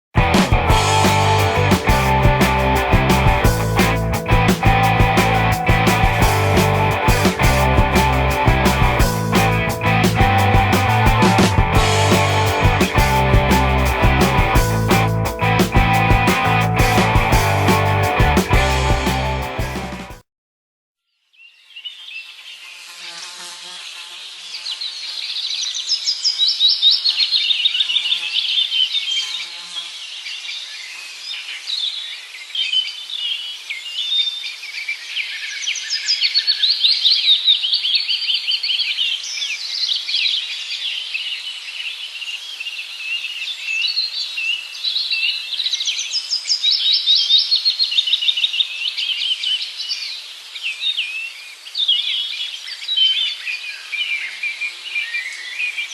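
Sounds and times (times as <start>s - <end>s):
small birds chirping and trilling: 21.2s - 55.9s.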